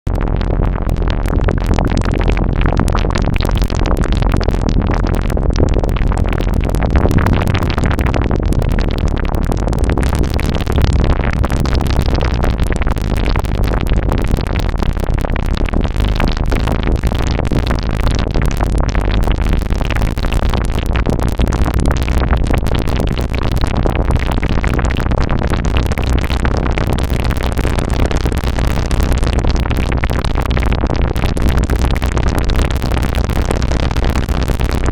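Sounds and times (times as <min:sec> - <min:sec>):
low synthesizer drone: 0:00.0 - 0:34.9
rapid synthesizer blips and clicks: 0:00.0 - 0:34.9.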